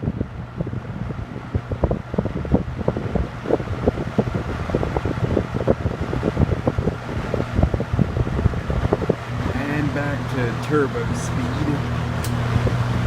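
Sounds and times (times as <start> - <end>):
box fan motor hum: 0.0 - 13.0
wind gusting on microphone: 0.0 - 13.0.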